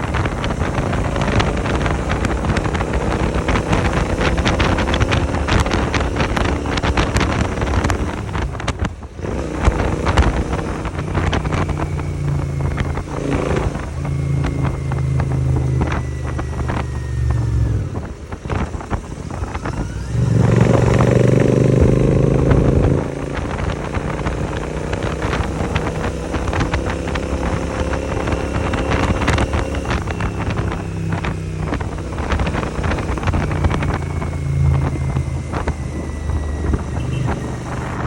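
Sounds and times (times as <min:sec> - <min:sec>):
motorcycle engine accelerating: 0:00.0 - 0:38.0
wind noise on microphone: 0:00.0 - 0:38.0.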